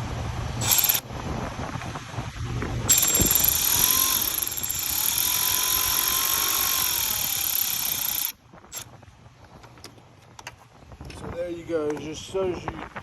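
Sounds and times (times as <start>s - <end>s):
cordless ratchet motor whirring: 0.6s - 1.1s, 2.9s - 8.9s.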